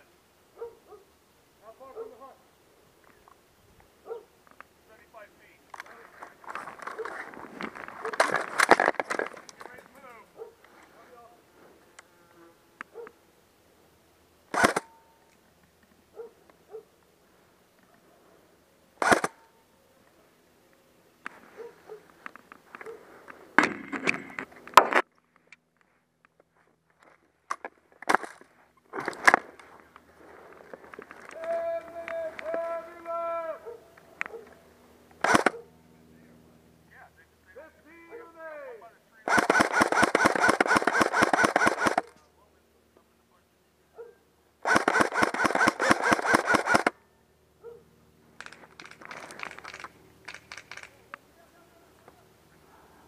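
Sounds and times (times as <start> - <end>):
rustling and clattering: 5.7 - 10.0
airsoft rifle full-auto burst: 14.5 - 14.9, 19.0 - 19.4, 35.2 - 35.6, 39.3 - 42.1, 44.6 - 46.9
irregular clatter of clicks: 48.4 - 51.2.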